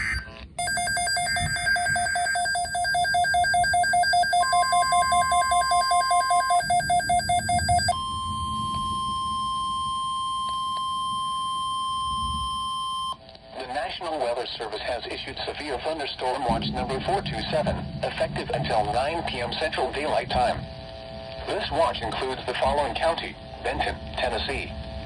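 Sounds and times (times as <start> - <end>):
rapid pulsing alarm beep: 0.0 - 13.2
steady warning alarm tone: 0.0 - 13.8.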